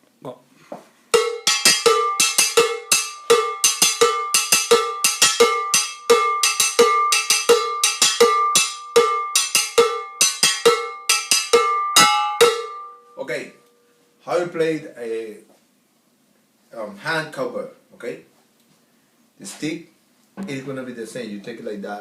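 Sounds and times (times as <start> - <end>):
cowbell struck with stick: 1.2 - 13.2.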